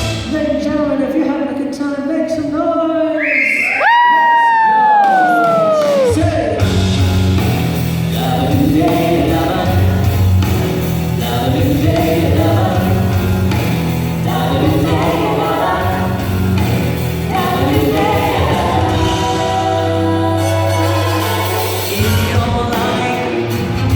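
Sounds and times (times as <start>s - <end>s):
backing band with bass line: 0.0s - 1.0s, 4.9s - 23.9s
voices singing in harmony: 8.1s - 23.6s.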